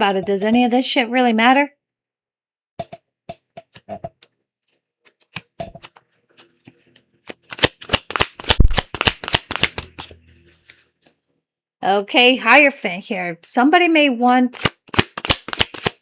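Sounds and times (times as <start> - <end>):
cards shuffling: 5.0 - 10.8, 14.6 - 16.0.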